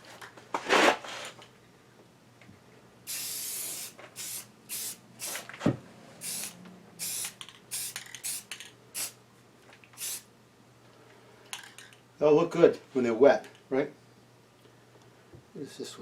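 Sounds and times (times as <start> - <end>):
spray paint hissing: 3.1 - 5.4, 6.2 - 9.2, 10.0 - 10.3.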